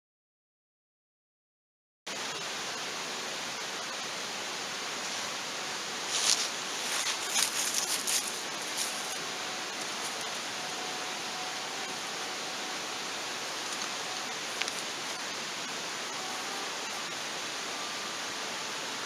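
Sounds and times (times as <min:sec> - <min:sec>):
campfire hissing: 0:02.1 - 0:19.0
wood crackling and popping: 0:06.1 - 0:10.5, 0:13.5 - 0:15.4.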